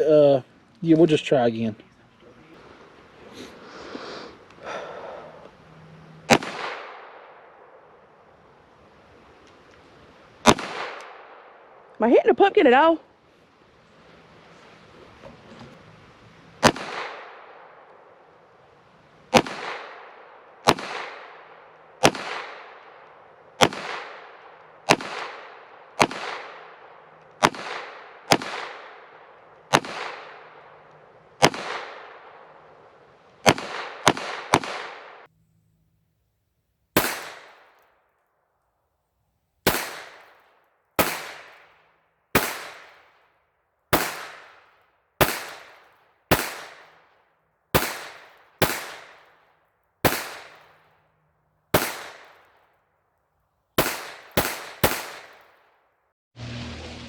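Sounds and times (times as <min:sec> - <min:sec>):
pistol shots with echo: 0:06.3 - 0:07.9, 0:10.4 - 0:11.8, 0:16.6 - 0:17.8, 0:19.3 - 0:30.7, 0:31.4 - 0:32.4, 0:33.4 - 0:35.3, 0:37.0 - 0:37.8, 0:39.6 - 0:43.3, 0:43.9 - 0:50.9, 0:51.7 - 0:52.6, 0:53.8 - 0:55.7.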